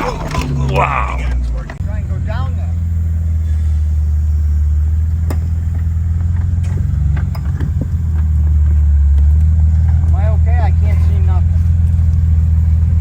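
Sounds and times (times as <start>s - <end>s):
engine running low: 0.0s - 13.0s
sharp knocks and clicks: 5.2s - 10.2s.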